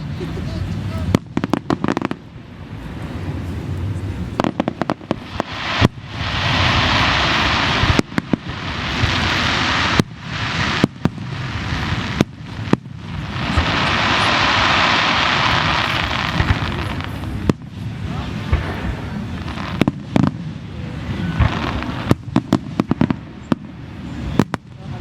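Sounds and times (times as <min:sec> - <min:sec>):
dense steady hiss: 0:00.0 - 0:25.0
firework shells bursting: 0:04.4 - 0:20.5.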